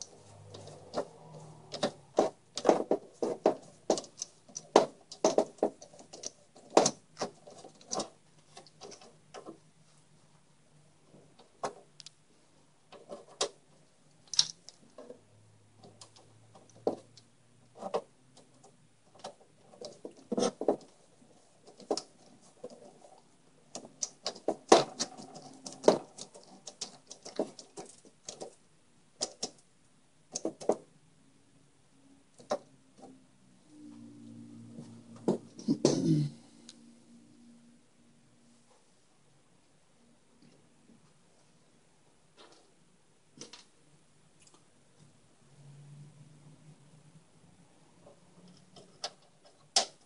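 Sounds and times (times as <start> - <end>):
small screws clicking and rattling: 14.2 - 15.0.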